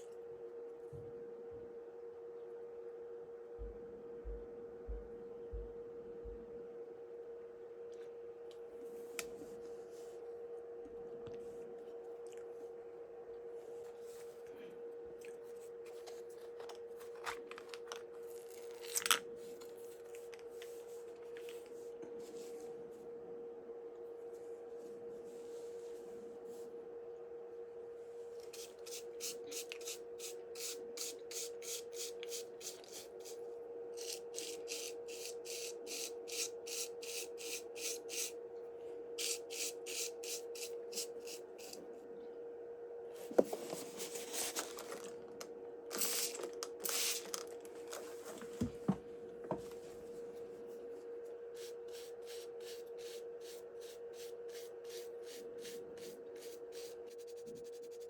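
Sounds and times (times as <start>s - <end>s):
low electrical hum: 0.0s - 58.0s.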